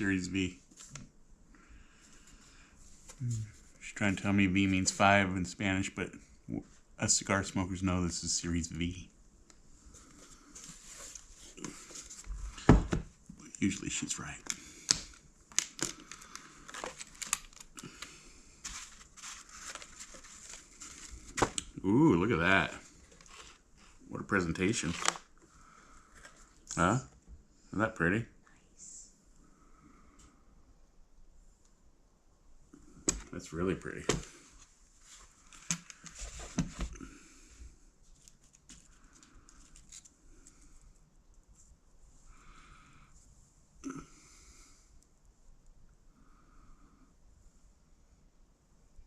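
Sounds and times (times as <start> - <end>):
packaging crinkling: 14.4 - 21.6, 24.7 - 25.3.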